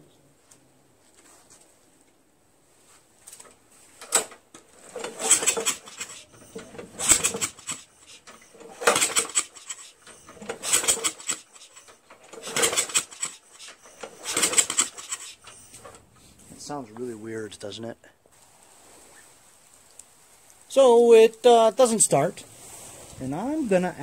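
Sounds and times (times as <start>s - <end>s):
mower recoil starter pulls: 3.4s - 17.1s
engine turning over whir: 4.0s - 17.0s.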